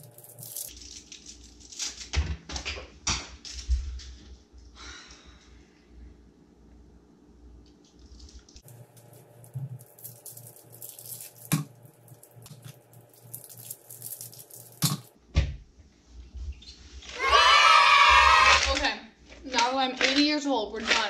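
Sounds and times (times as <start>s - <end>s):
plastic wrappers crinkling: 0.0s - 2.1s, 8.0s - 15.1s.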